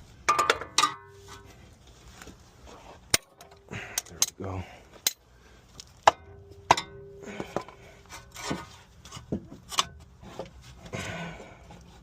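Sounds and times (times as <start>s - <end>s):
metal tools clinking and knocking: 0.3s - 1.4s.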